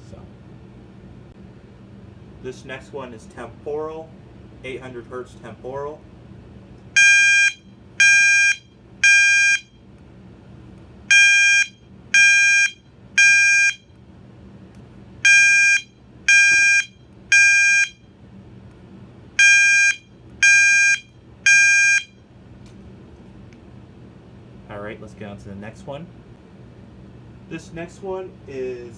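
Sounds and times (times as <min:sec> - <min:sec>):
fire alarm beeps: 0:07.0 - 0:09.8, 0:11.1 - 0:14.0, 0:15.2 - 0:18.1, 0:19.4 - 0:22.2.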